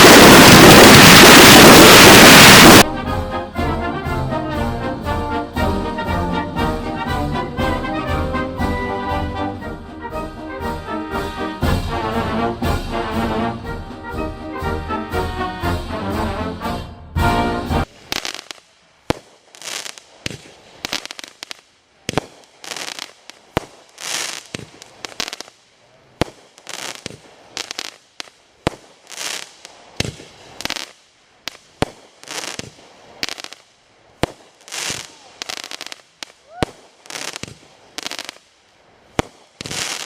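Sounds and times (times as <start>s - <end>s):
firework shell bursting: 0.0s - 2.9s
music: 2.9s - 17.9s.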